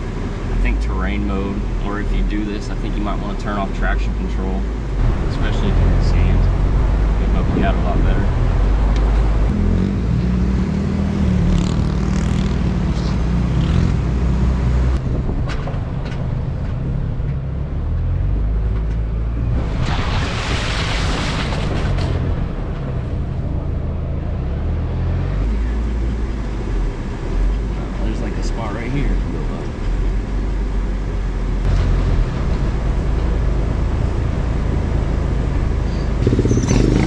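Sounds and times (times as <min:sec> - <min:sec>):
pickup truck engine running: 0:25.7 - 0:37.0.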